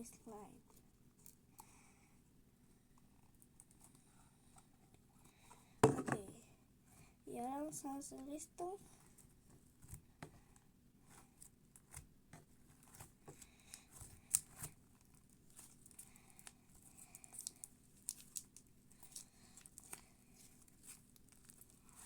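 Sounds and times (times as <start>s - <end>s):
slime sticky clicks and crackles: 15.5s - 22.0s.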